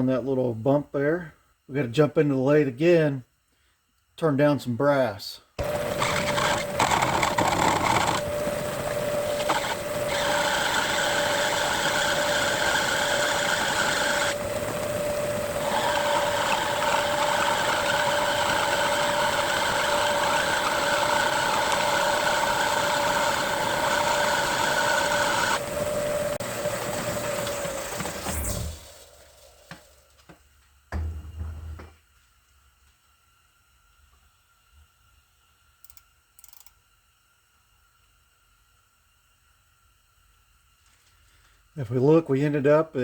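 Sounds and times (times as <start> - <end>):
lathe cutting brass: 5.6 - 28.8
metal lathe whining: 5.6 - 28.9.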